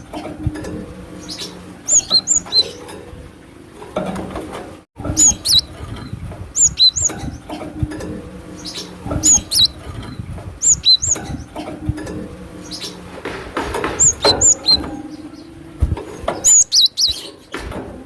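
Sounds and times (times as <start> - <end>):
bird singing high whistled notes: 1.3 - 2.8, 5.2 - 5.7, 6.6 - 7.1, 8.6 - 9.8, 10.6 - 11.2, 14.0 - 14.8, 16.4 - 17.3.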